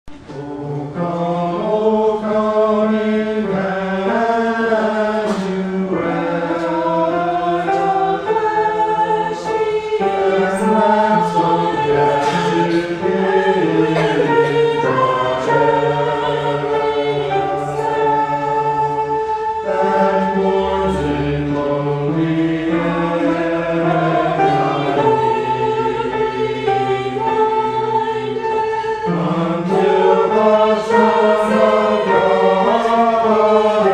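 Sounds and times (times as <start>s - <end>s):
choir singing held chords: 0.1s - 33.9s.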